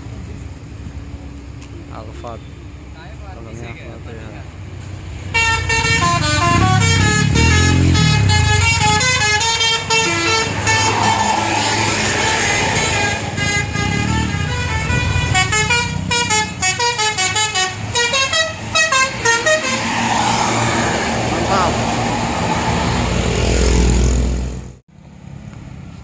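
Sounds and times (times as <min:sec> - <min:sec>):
bus engine rumbling: 0:00.0 - 0:26.0
bus melody horn playing: 0:05.3 - 0:11.1, 0:12.2 - 0:20.0.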